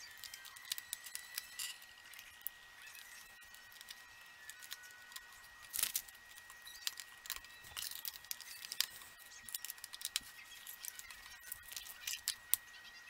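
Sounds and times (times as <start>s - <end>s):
faint high whine: 0.0s - 13.0s
plastic bricks clicking: 3.6s - 12.6s.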